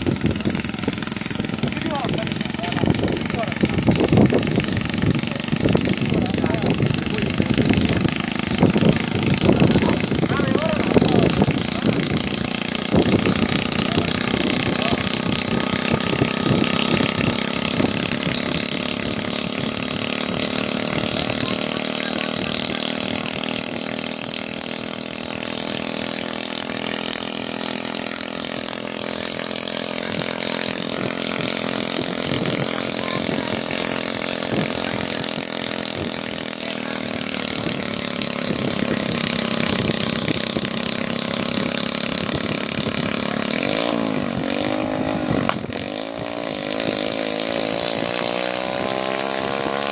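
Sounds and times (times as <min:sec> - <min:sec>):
helicopter engine and rotor running: 0:00.0 - 0:49.9.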